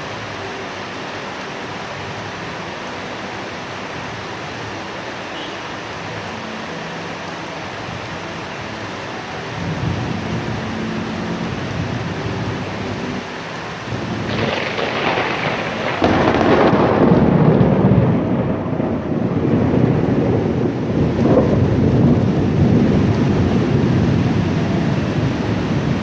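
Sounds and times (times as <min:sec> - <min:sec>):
steady rain: 0:00.0 - 0:26.0
thunder rumbling: 0:09.4 - 0:26.0.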